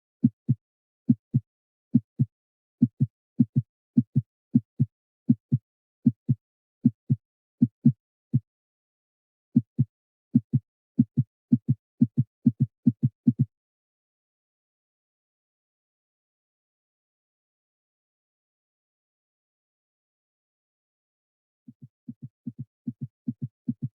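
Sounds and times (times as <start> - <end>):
heartbeat thumps: 0.2 - 8.5, 9.6 - 13.5, 21.7 - 23.9.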